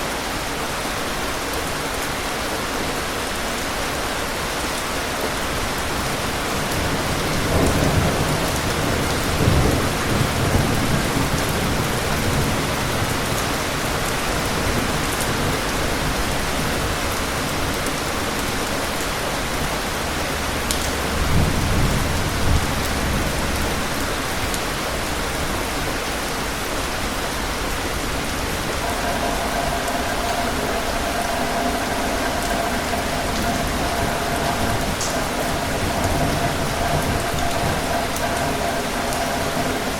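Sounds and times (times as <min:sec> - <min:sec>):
steady rainfall: 0:00.0 - 0:39.9
distant thunder rumble: 0:27.5 - 0:39.9.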